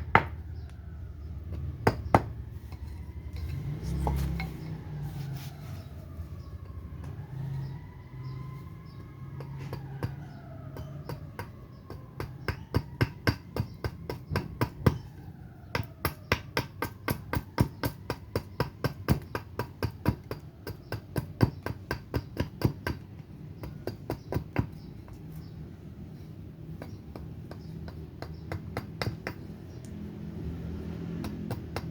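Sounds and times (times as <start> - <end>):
axe chopping wood: 9.6 - 15.0, 15.7 - 24.8, 31.2 - 31.9.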